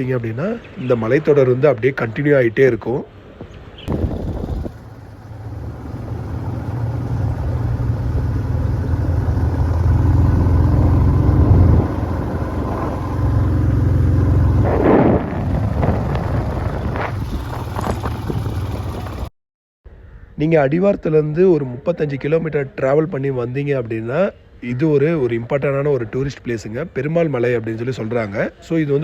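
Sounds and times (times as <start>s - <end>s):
motorcycle engine running: 3.9s - 19.3s.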